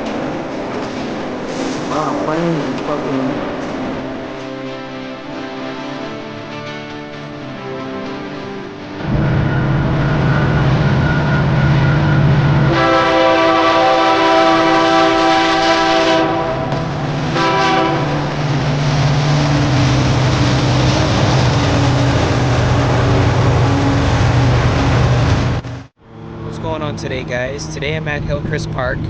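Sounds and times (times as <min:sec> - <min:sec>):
diesel locomotive engine drone: 0:00.0 - 0:29.0
locomotive horn blasts: 0:02.2 - 0:25.2.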